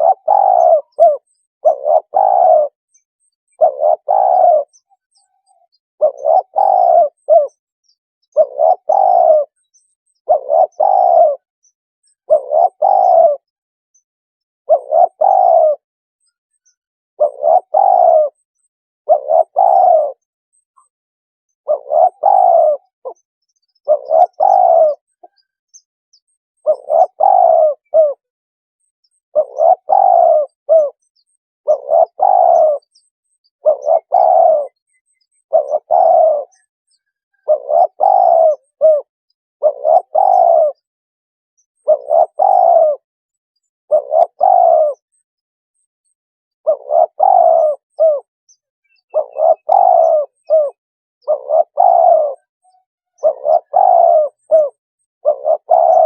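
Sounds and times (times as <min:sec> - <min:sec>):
dove cooing: 0:00.0 - 0:07.6, 0:08.3 - 0:11.5, 0:12.2 - 0:13.5, 0:14.7 - 0:15.8, 0:17.2 - 0:18.5, 0:19.1 - 0:20.3, 0:21.6 - 0:23.2, 0:23.8 - 0:25.5, 0:26.6 - 0:28.3, 0:29.3 - 0:31.1, 0:31.7 - 0:40.9, 0:41.8 - 0:43.1, 0:43.9 - 0:45.1, 0:46.6 - 0:48.3, 0:48.9 - 0:56.0.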